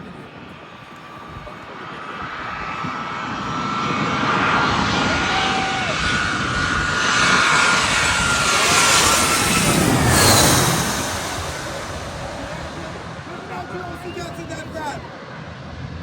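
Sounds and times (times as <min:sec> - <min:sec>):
steady high whine: 0:00.0 - 0:15.2
airplane engine rush: 0:00.0 - 0:16.0.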